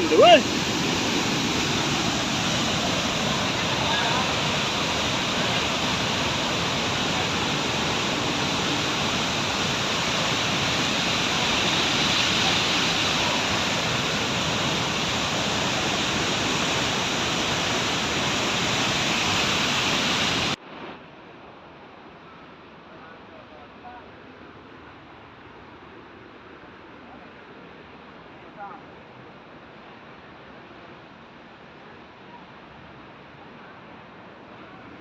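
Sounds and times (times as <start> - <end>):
waterfall rushing: 0.0 - 20.6.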